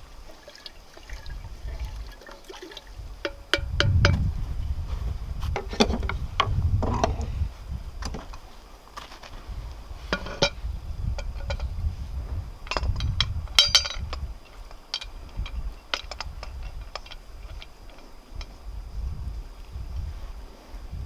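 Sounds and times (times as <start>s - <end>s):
metal cookware clinking: 10.2s - 10.6s, 12.7s - 17.2s.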